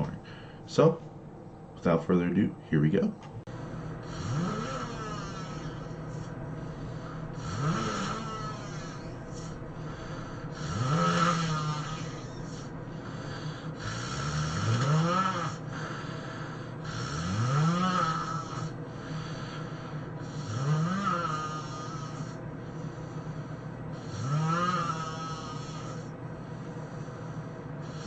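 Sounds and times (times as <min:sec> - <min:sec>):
person snoring loudly: 0:03.5 - 0:22.4, 0:23.9 - 0:26.1.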